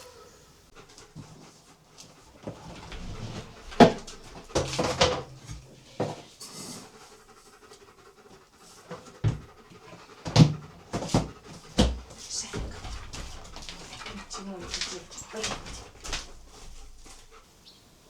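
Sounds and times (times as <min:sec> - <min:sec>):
dog panting: 0:00.0 - 0:17.8.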